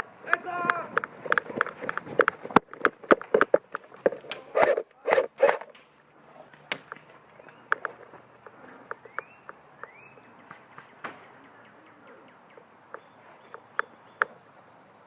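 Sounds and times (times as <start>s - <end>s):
running footsteps: 0.3s - 4.4s.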